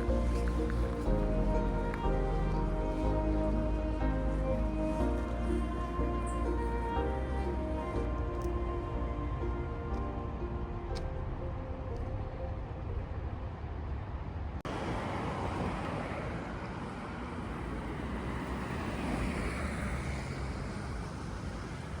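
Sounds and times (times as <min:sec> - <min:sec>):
soft music: 0:00.0 - 0:13.9
rushing outdoor background noise: 0:00.0 - 0:22.0.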